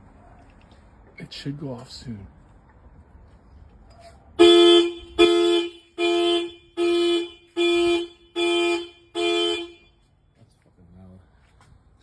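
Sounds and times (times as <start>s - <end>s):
car horn honking: 4.4s - 10.2s.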